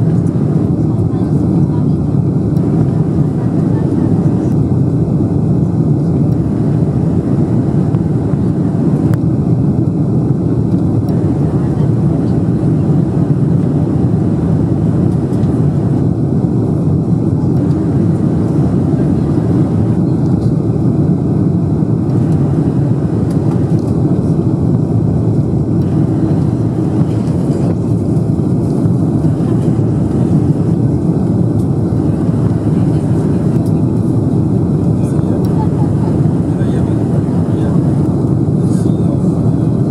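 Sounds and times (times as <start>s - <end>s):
jet engine drone in cabin: 0.0s - 39.9s.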